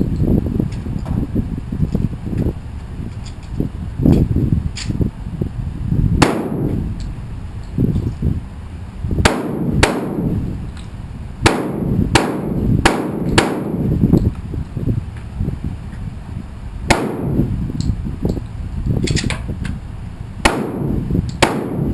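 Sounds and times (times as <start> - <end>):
shotgun shots: 6.2 - 6.8, 9.2 - 10.4, 11.4 - 13.8, 16.9 - 17.4, 20.4 - 21.9.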